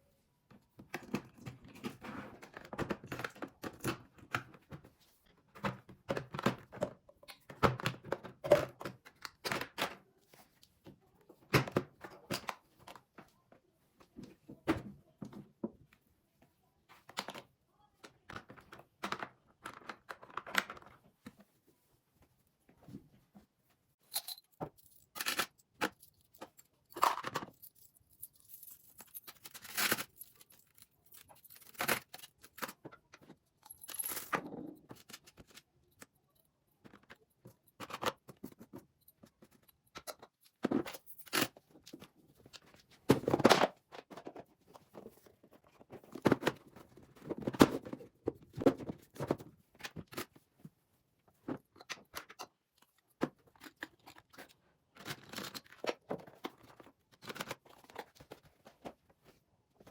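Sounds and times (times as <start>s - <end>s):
objects clicking and scraping: 24.0s - 50.7s, 51.3s - 59.9s.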